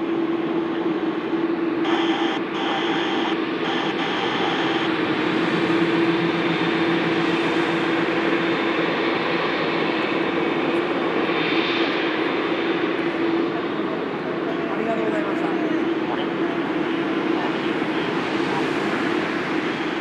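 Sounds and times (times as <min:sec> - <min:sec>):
constant low hum: 0:00.0 - 0:20.0
jet engines roaring at takeoff: 0:00.0 - 0:20.0.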